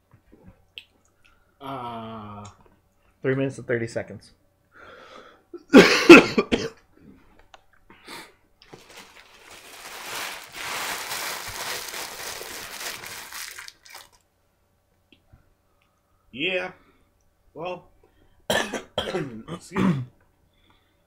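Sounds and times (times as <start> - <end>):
paper wrapper crumpling: 8.6 - 14.2.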